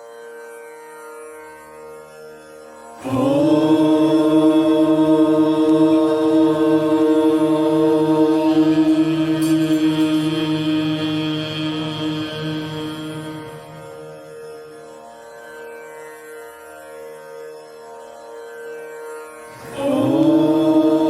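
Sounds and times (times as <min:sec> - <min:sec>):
chanted drone: 0:02.7 - 0:16.9, 0:18.8 - 0:21.0.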